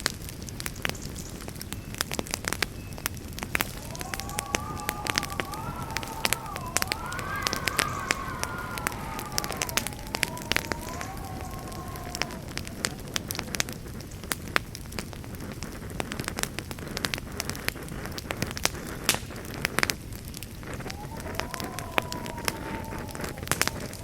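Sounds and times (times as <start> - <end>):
campfire pops and crackles: 0.0 - 24.0
low rumble of flames: 0.0 - 24.0
faint whistling tone: 2.8 - 14.1, 20.7 - 24.0.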